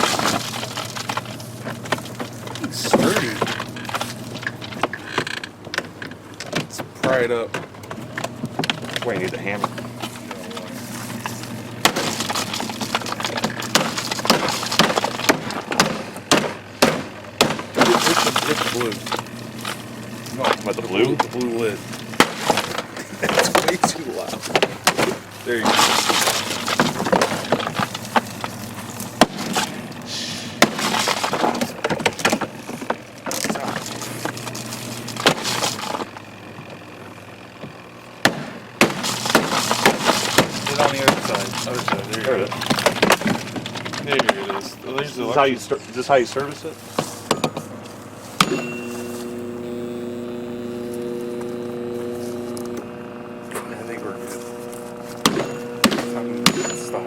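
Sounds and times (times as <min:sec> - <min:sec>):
plastic casing cracking: 0:17.7 - 0:36.2, 0:38.8 - 0:44.4
low hum: 0:46.8 - 0:57.0.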